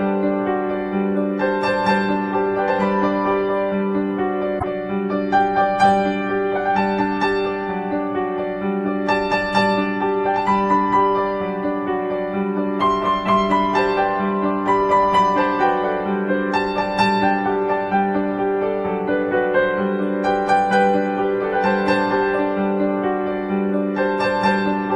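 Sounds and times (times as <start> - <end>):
calm keyboard music: 0.0 - 24.9.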